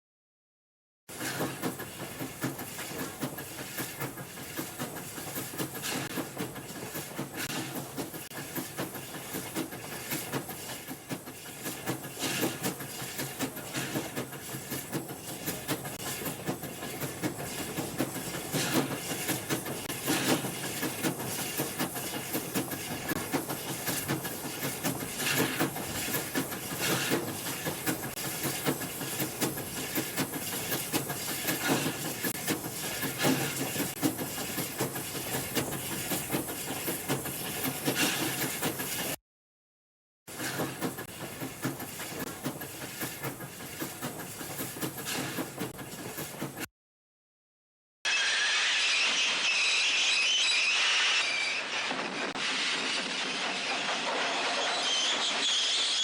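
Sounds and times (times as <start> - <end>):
clanks and clicks from wheels: 1.1 - 39.2, 40.3 - 46.7
steam hissing: 1.2 - 39.2, 48.1 - 56.0.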